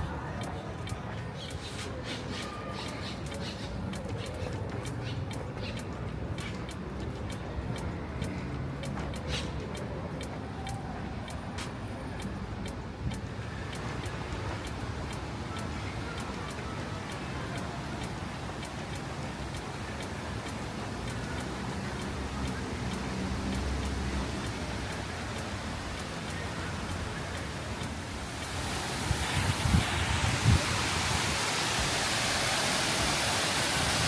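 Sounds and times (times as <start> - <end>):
urban traffic rumble: 0.0 - 34.0
walking footsteps: 0.1 - 15.5.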